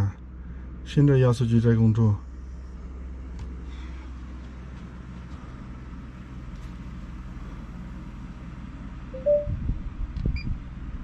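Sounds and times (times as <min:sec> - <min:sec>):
air conditioner compressor humming: 0:00.0 - 0:11.0
short rising tone: 0:09.2 - 0:09.6.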